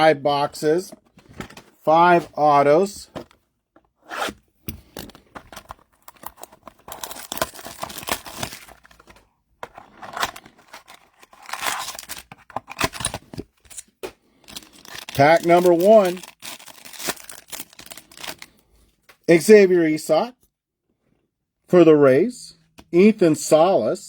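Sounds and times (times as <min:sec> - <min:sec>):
packaging tearing and crinkling: 0:05.5 - 0:09.2, 0:09.8 - 0:18.5.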